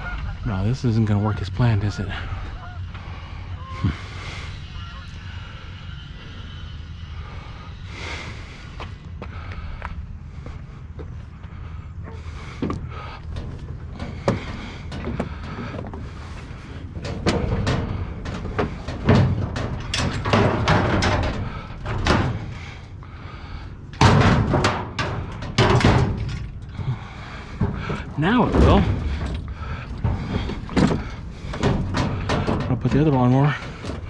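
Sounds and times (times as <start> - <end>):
low rumble: 0.0 - 34.0
lawnmower clanking and scraping: 12.2 - 34.0
loud bangs: 13.2 - 34.0.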